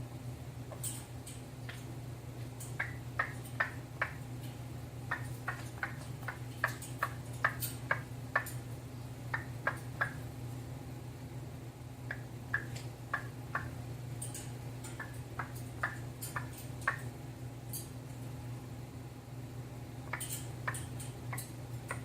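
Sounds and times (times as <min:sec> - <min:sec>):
parrot clicking: 0:02.6 - 0:08.6, 0:09.3 - 0:10.2, 0:12.1 - 0:17.1, 0:20.1 - 0:22.0.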